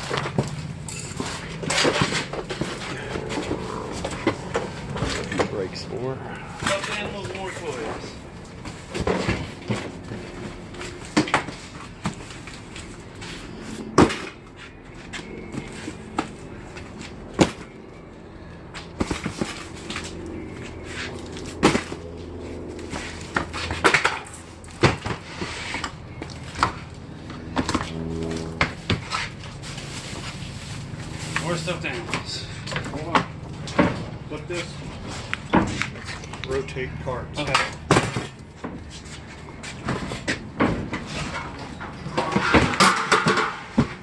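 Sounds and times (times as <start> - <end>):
boxes knocking and clattering: 0.0 - 3.5, 8.6 - 10.2, 39.8 - 44.0
steady low hum: 0.0 - 44.0.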